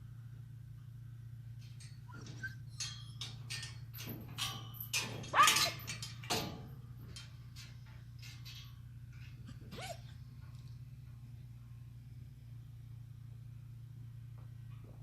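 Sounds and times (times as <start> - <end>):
steady low hum: 0.0 - 15.0
horse hooves knocking and clattering: 1.5 - 11.5
high falling squeak: 2.1 - 3.4.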